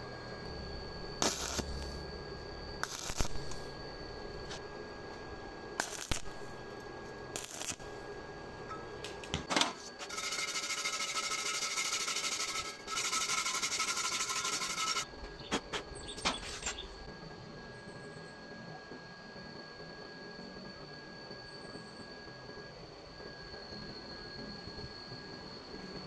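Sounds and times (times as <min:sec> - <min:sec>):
arc welding crackling hiss: 0:00.4 - 0:17.1.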